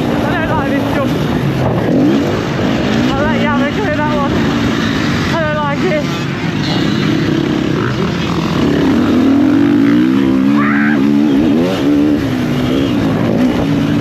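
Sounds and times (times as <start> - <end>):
motocross bike engine: 0.0 - 14.0.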